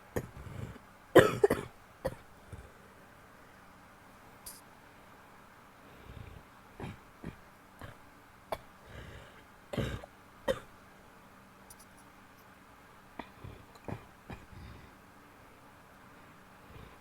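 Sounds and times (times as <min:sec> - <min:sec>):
woman coughing: 0:01.2 - 0:02.2, 0:09.8 - 0:10.7.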